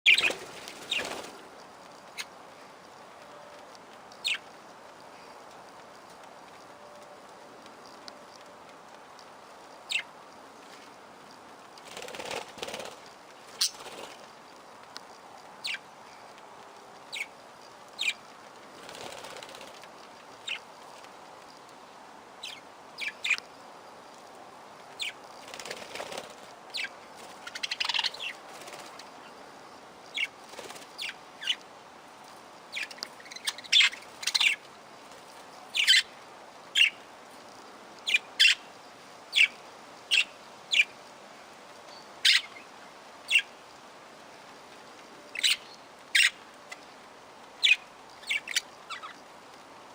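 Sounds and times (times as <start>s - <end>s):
parrots chirping: 0.1s - 1.4s, 32.7s - 34.6s, 35.7s - 36.1s
wings fluttering: 0.1s - 2.3s, 11.6s - 14.5s, 18.0s - 21.1s, 25.0s - 29.3s, 30.1s - 31.6s.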